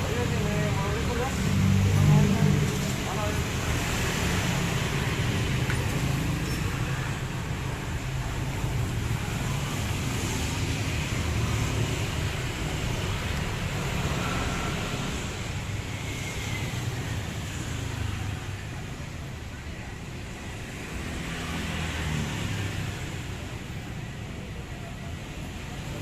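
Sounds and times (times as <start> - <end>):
road and traffic noise: 0.0 - 26.0.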